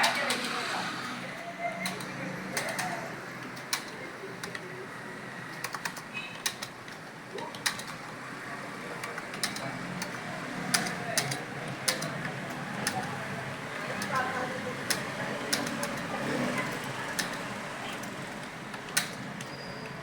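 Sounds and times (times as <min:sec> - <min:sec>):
keyboard typing: 0:05.5 - 0:08.2, 0:08.9 - 0:20.0.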